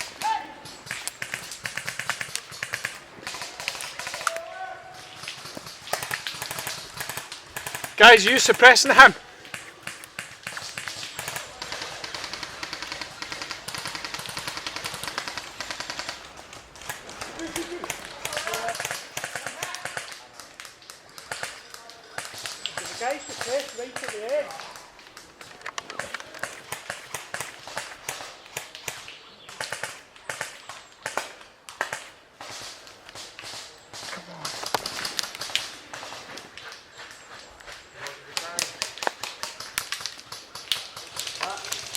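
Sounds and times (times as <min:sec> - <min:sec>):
airsoft guns firing automatic bursts: 0:00.0 - 0:37.1, 0:38.3 - 0:41.9
airsoft gunshots: 0:05.0 - 0:20.2.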